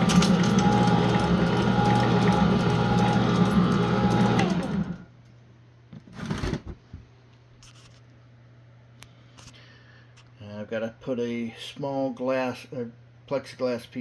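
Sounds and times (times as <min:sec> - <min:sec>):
shredder clicks: 0:00.0 - 0:05.0
shredder motor with gear whine: 0:00.0 - 0:05.1.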